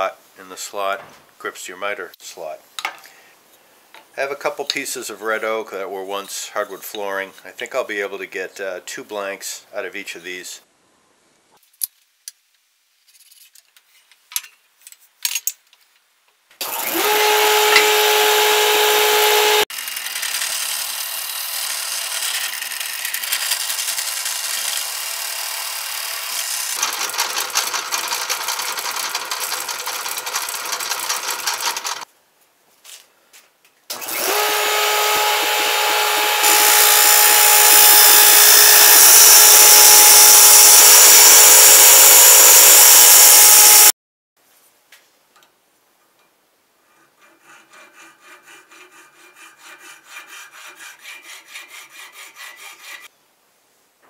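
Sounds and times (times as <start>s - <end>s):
power tool motor whining: 16.6s - 32.0s, 33.9s - 43.9s.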